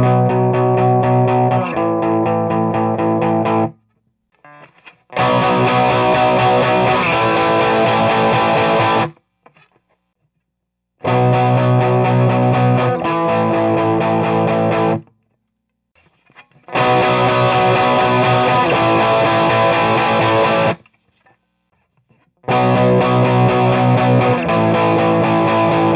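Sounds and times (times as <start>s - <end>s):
electric guitar power chords: 0.0s - 3.7s, 5.2s - 9.1s, 11.0s - 15.0s, 16.7s - 20.8s, 22.5s - 25.9s.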